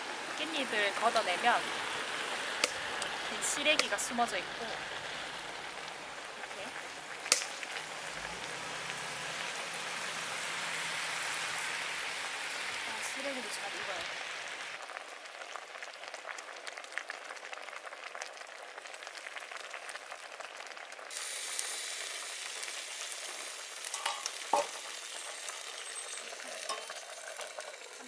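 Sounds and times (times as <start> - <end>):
soup boiling and bubbling: 0.0 - 28.0
sharp clicks: 2.6 - 4.0.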